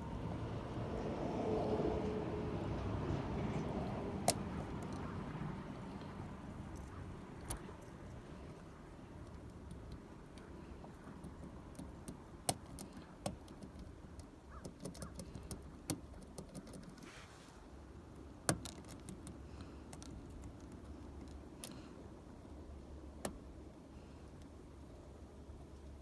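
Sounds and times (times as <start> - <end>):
low background rumble: 0.0 - 26.0
small metallic clicks in a lock: 11.2 - 17.0, 18.5 - 21.8.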